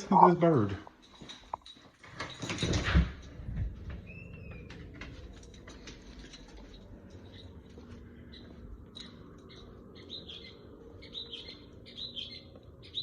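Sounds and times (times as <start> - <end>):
bird chirping: 4.0 - 4.8, 7.2 - 13.0.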